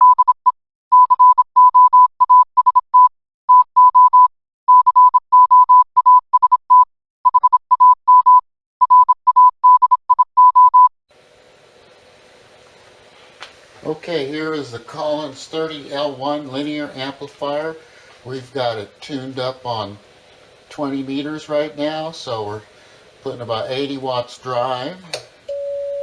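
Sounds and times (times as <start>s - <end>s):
morse code tone: 0.9s - 10.9s, 25.5s - 26.0s.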